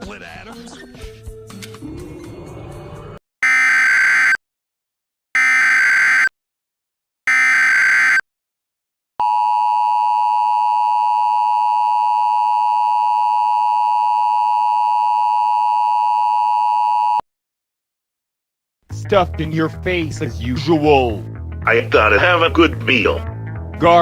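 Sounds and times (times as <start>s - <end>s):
two-tone attention signal: 3.4s - 4.4s, 5.4s - 6.3s, 7.3s - 8.2s
digital data bursts: 7.3s - 8.2s.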